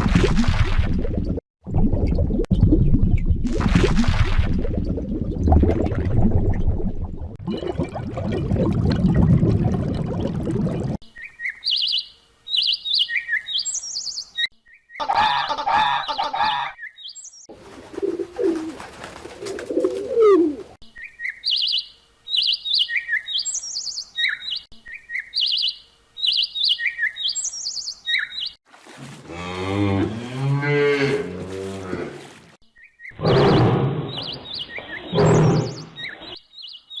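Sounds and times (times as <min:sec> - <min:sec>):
small bird chirping: 0:11.1 - 0:15.0, 0:20.9 - 0:28.6.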